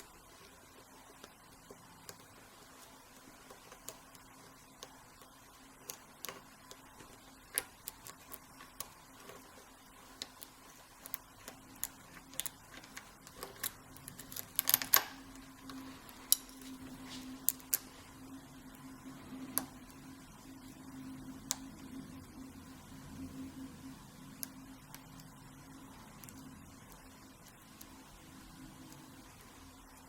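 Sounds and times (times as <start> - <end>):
lock pick clicking against pins: 10.2 - 16.6.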